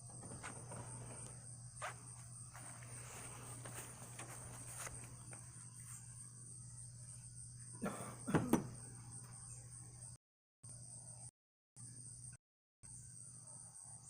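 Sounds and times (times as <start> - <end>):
parts scraping: 0.0 - 6.1.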